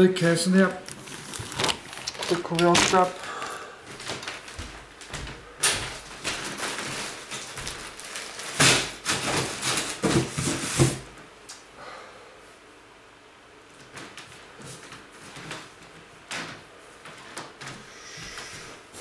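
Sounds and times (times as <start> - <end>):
rustling: 0.8 - 11.1
hangers clattering into cardboard box: 1.1 - 4.5, 5.6 - 11.1.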